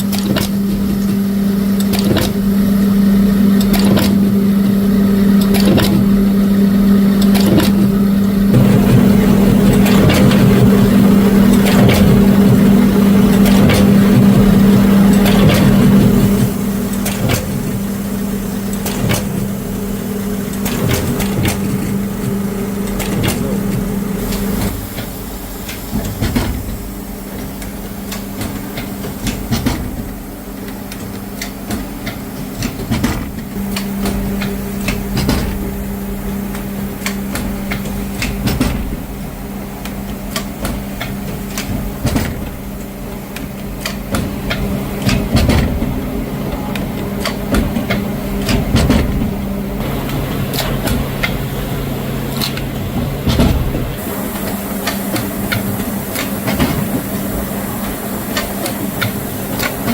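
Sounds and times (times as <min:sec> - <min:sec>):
factory machinery hum: 0:00.0 - 0:59.9
rapid mechanical clicking and knocking: 0:00.0 - 0:59.9.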